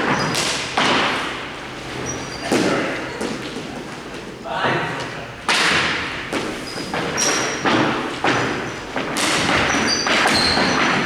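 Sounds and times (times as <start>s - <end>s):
pucks and players hitting boards: 0.0s - 1.5s, 2.3s - 3.9s, 4.6s - 11.0s.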